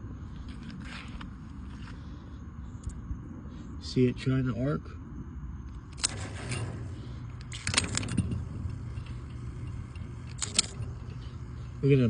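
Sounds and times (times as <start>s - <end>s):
low steady hum: 0.0s - 12.0s
electrical arcing crackles: 5.8s - 12.0s.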